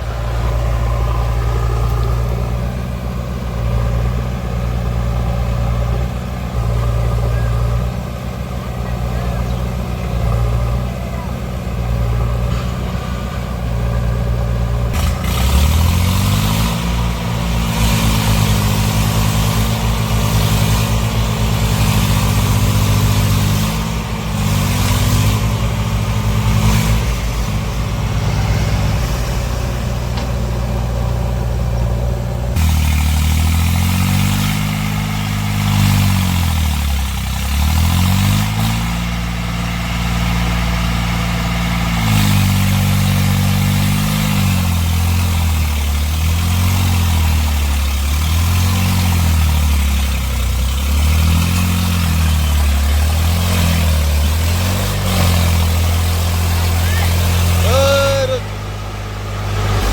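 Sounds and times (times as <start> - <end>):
heavy diesel engine revving: 0.0 - 59.9.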